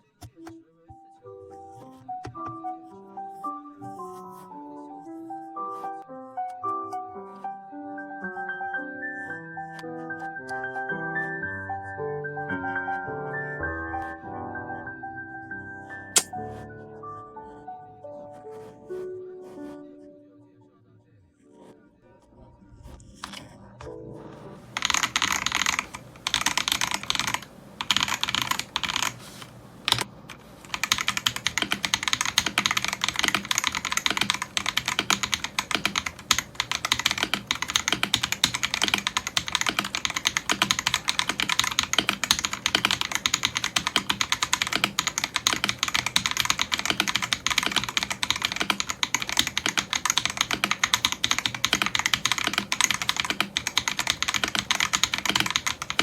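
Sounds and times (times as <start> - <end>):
mechanical keyboard typing: 24.7 - 56.0.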